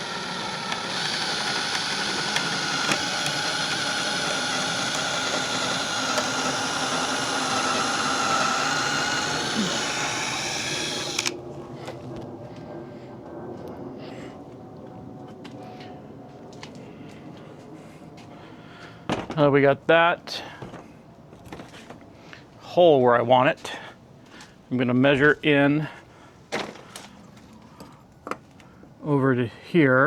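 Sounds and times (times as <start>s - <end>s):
power drill whining: 0.0s - 11.4s.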